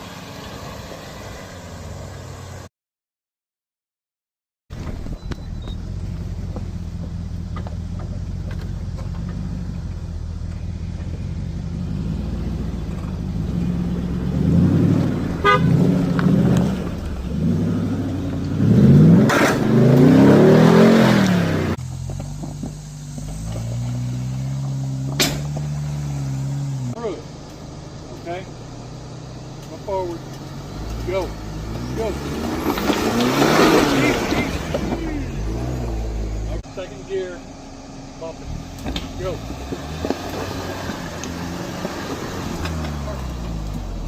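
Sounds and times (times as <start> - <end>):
truck engine revving: 5.0 - 44.0
sharp knock or scrape: 25.1 - 25.6.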